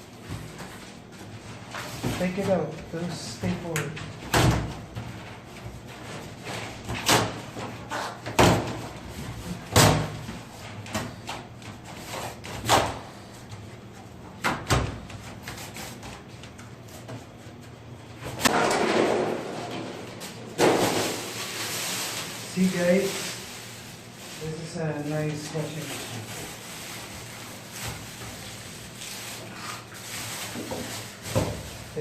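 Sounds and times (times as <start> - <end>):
scraping rustle of packing: 21.1 - 32.0.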